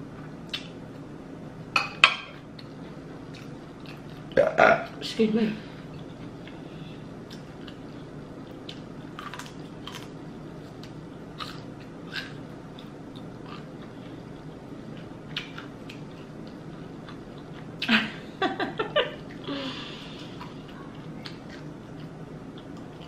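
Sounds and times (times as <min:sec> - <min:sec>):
low room hum: 0:00.0 - 0:23.0
chewing clicks and mouth sounds: 0:10.7 - 0:17.9.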